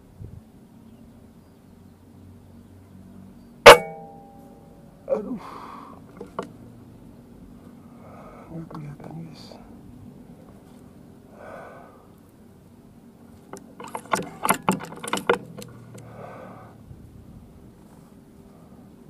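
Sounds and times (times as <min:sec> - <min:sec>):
air rifle metallic clicks: 0:13.5 - 0:16.1.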